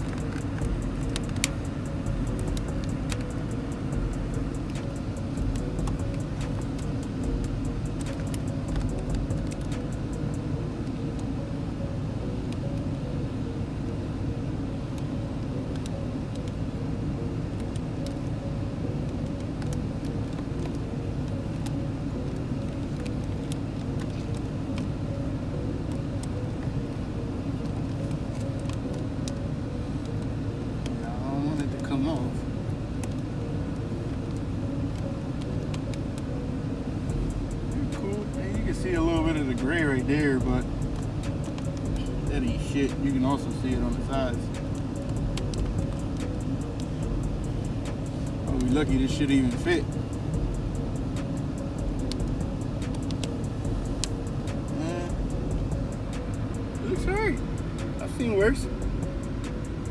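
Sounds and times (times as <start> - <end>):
light clicks and taps: 0.0 - 1.7, 4.5 - 10.2
car engine idling: 0.0 - 59.9.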